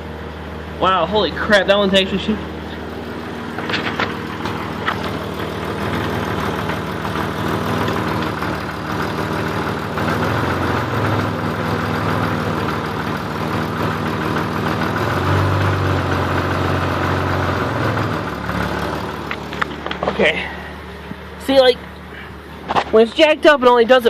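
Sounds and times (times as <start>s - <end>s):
engine and driveline drone: 0.0s - 24.0s
driveline clunking: 2.6s - 8.6s.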